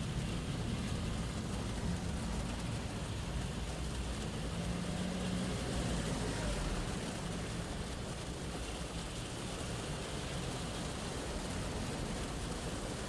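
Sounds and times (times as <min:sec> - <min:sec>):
low vehicle rumble: 0:00.0 - 0:13.0
rain hissing on a car: 0:00.0 - 0:13.0.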